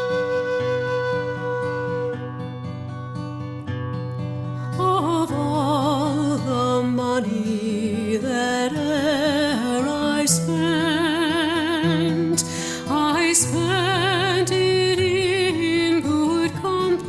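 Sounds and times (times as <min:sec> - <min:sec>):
person singing with vibrato: 0:04.7 - 0:17.0.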